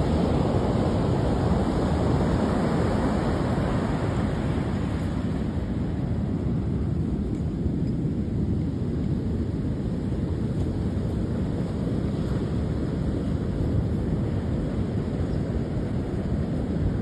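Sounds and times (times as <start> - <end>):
wind rumbling on microphone: 0.0 - 17.0.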